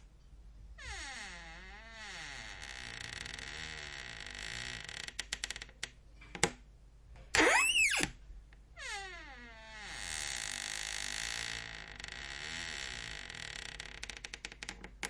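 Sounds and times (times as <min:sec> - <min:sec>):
squeaky door hinges creaking: 0:00.8 - 0:04.8, 0:07.4 - 0:08.1.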